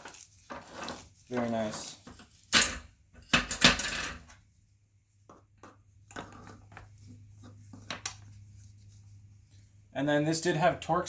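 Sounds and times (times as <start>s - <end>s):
metal tools clattering: 0.5s - 4.4s.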